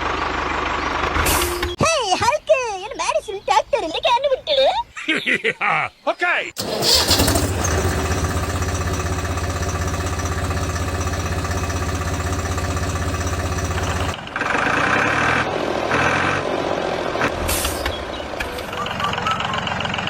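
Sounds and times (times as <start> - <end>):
tractor engine idling: 0.0 - 1.7, 6.6 - 14.9, 18.2 - 20.0.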